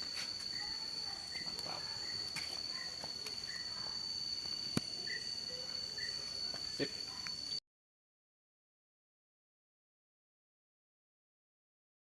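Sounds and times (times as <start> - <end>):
insect short chirps: 0.0 - 7.6
insects high-pitched drone: 0.0 - 7.6.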